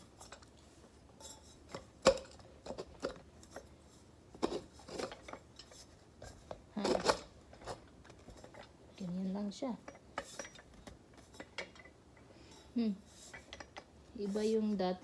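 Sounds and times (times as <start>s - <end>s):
grinder parts clicking and knocking: 1.2s - 3.8s, 4.4s - 8.8s, 9.7s - 12.6s.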